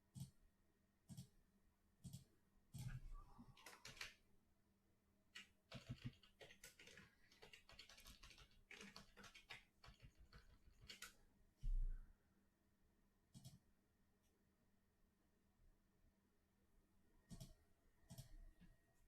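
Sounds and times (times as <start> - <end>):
keyboard typing: 3.6 - 4.2, 5.4 - 11.2.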